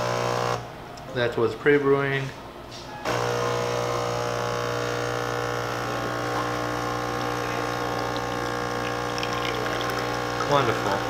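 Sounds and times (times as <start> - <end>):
espresso machine pump humming: 3.1 - 11.0.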